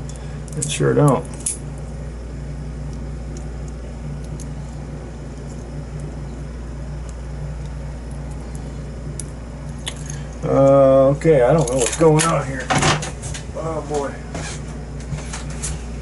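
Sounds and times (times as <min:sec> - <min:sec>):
low background hum: 0:00.0 - 0:16.0
small metal lock parts clicking: 0:11.6 - 0:12.3.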